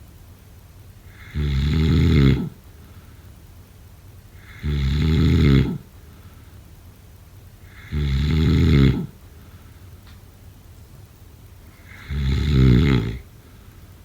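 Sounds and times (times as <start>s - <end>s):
quiet breathing: 1.0s - 3.6s, 4.2s - 6.8s, 7.6s - 10.1s, 11.6s - 14.0s
person snoring: 1.1s - 2.6s, 4.4s - 5.9s, 7.6s - 9.2s, 11.8s - 13.3s.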